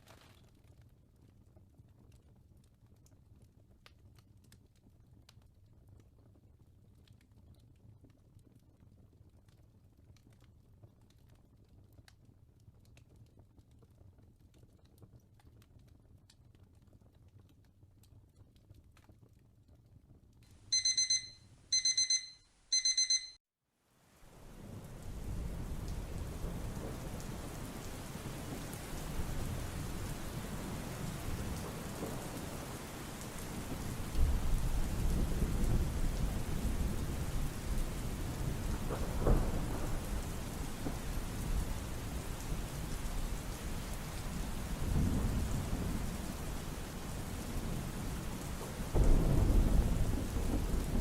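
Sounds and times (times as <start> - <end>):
timer alarm beeps: 20.7 - 23.4
steady rain: 24.0 - 51.0
thunder rumbles: 24.4 - 51.0.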